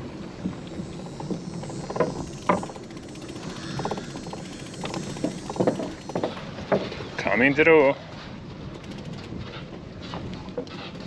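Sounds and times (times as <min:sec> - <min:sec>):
bicycle rolling: 0:00.0 - 0:07.1, 0:08.7 - 0:11.0
bicycle rapid ticks: 0:00.8 - 0:06.8, 0:08.7 - 0:09.4.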